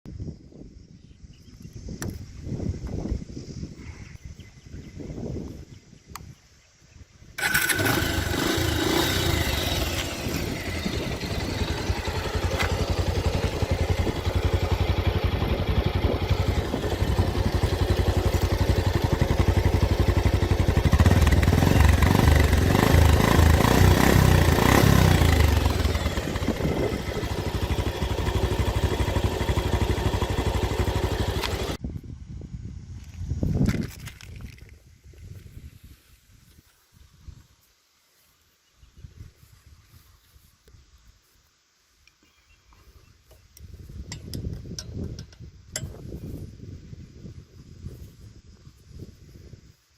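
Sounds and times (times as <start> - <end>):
motorcycle engine running: 7.4 - 31.8.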